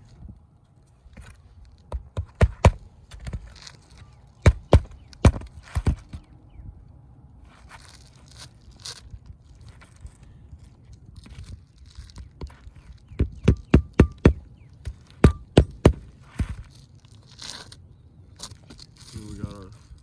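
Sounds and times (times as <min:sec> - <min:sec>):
hammer striking nails: 0:04.4 - 0:06.1, 0:13.2 - 0:14.5, 0:15.2 - 0:16.6
shingles scraping and rustling: 0:14.6 - 0:20.0.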